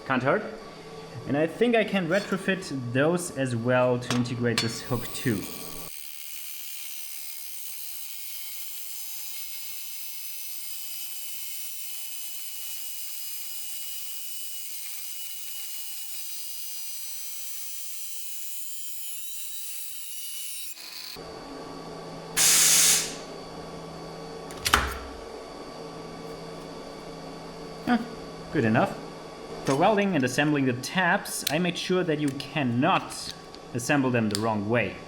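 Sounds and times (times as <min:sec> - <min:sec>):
machine whining: 0:00.5 - 0:11.4
short loud hiss: 0:22.4 - 0:23.3.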